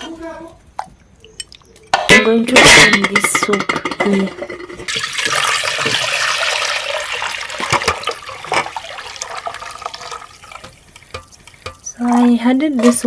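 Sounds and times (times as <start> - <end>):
broth pouring into a pot: 4.8 - 12.2.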